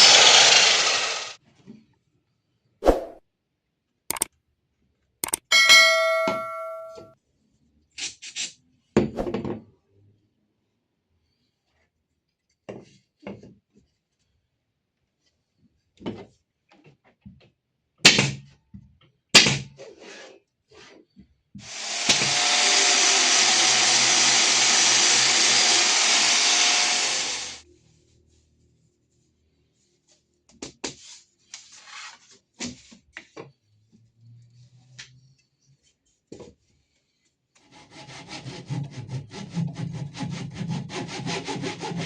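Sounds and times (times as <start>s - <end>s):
power tool running: 0.0s - 1.4s, 21.7s - 27.6s
knocks and clicks of tools: 5.2s - 7.1s.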